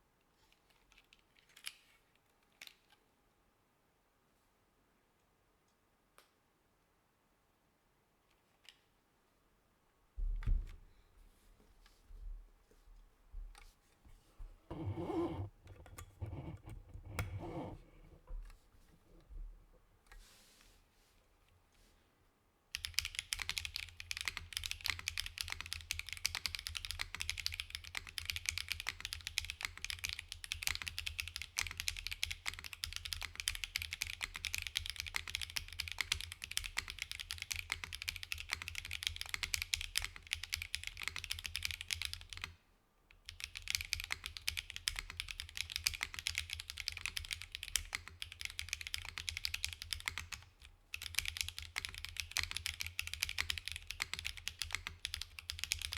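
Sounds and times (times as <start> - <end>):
fast mechanical keyboard typing: 14.7 - 17.8, 22.8 - 42.6, 43.2 - 55.9.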